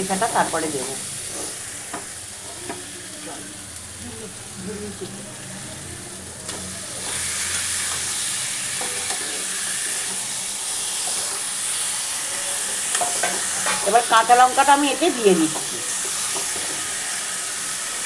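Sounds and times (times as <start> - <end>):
chicken sizzling in hot oil: 0.0 - 18.0.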